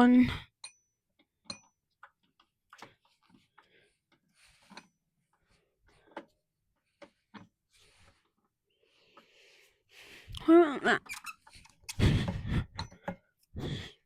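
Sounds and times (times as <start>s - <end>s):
small parts clicking and knocking: 0.5s - 7.6s, 11.0s - 13.4s.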